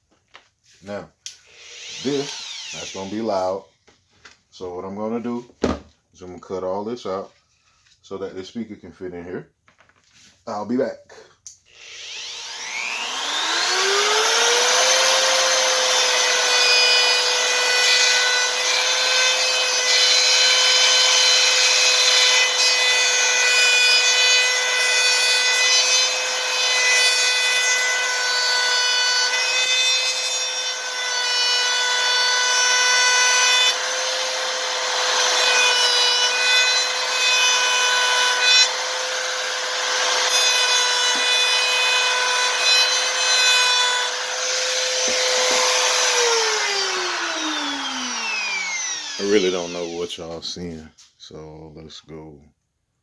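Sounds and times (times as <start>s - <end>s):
high-speed power tool whining: 1.3s - 3.6s, 11.7s - 50.4s.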